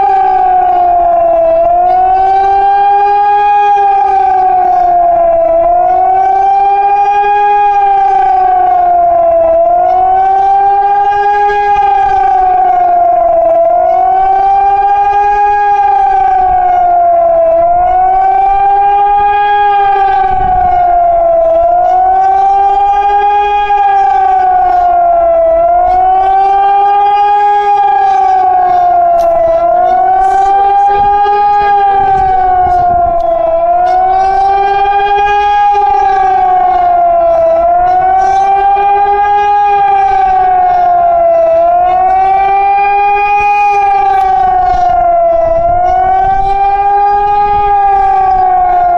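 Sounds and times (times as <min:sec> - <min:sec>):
electronic siren wailing: 0:00.0 - 0:48.9.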